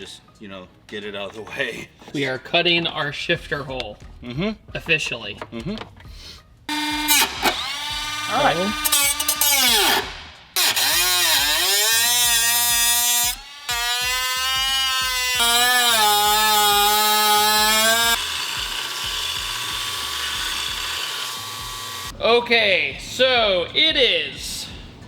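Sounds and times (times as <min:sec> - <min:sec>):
background music: 0:00.0 - 0:25.0
power cutting tool whining: 0:06.7 - 0:22.1.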